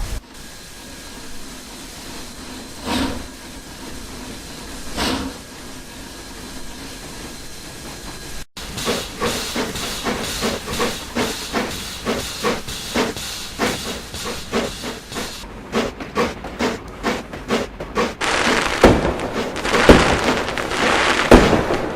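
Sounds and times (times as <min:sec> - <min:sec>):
locomotive exhaust chuffs: 0:00.0 - 0:21.9
steam hissing: 0:00.0 - 0:21.9.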